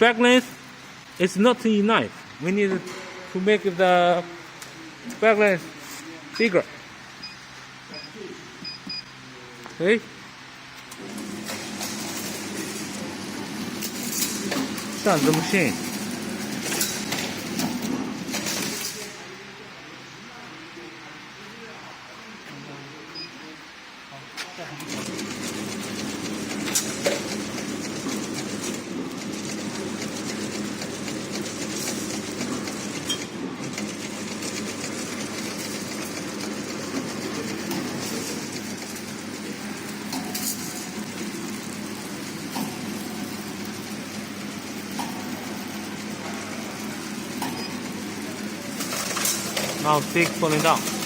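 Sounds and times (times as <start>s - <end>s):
machine clattering: 11.0s - 19.1s, 24.8s - 51.0s.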